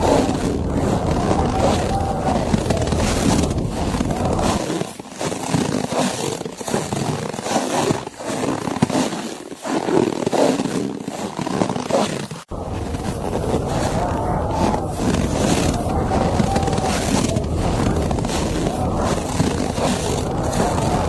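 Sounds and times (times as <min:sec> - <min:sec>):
wind roaring through forest: 0:00.0 - 0:04.6, 0:12.5 - 0:21.0.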